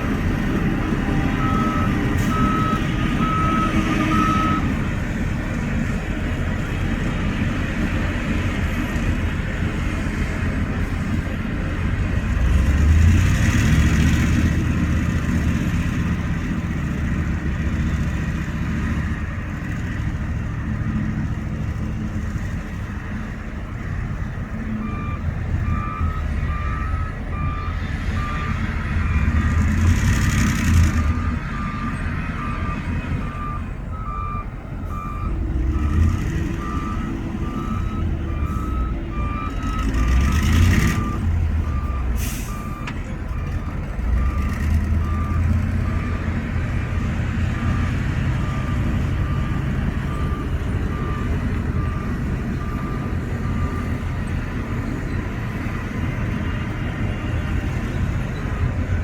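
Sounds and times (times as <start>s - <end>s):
heavy diesel machinery running: 0.0s - 59.0s
reversing alarm beeping: 0.9s - 4.7s, 24.7s - 29.9s, 30.9s - 46.4s, 47.5s - 56.5s.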